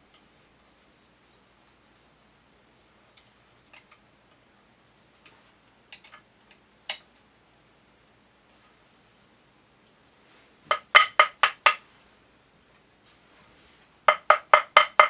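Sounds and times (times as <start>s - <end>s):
metallic clicks and taps of tools: 3.1s - 4.4s, 5.2s - 7.2s.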